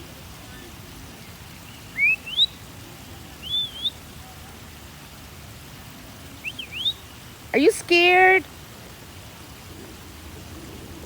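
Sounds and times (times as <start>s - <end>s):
background hiss: 0.0s - 11.0s
bird whistling: 1.7s - 2.6s, 3.4s - 4.0s, 6.4s - 7.2s.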